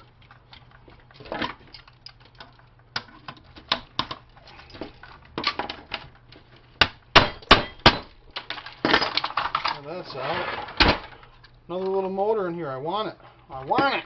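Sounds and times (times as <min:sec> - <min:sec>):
loud sharp knocks: 0:06.8 - 0:08.1.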